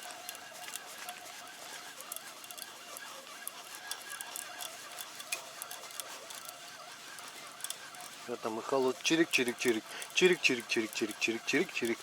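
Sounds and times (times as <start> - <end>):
small clicks: 0.0 - 8.4.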